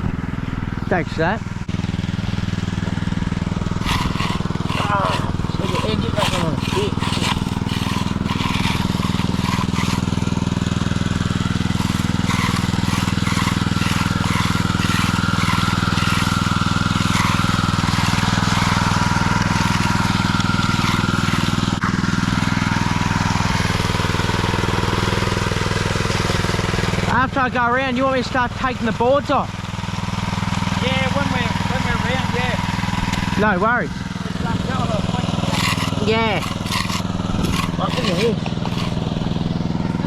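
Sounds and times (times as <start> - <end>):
engine running: 0.0 - 40.0
tool scraping fresh concrete: 1.7 - 27.4, 30.7 - 40.0.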